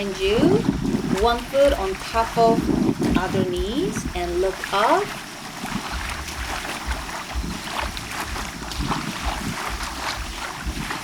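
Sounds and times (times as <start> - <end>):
small waves lapping on shore: 0.0 - 11.0
wind buffeting microphone: 0.0 - 11.0.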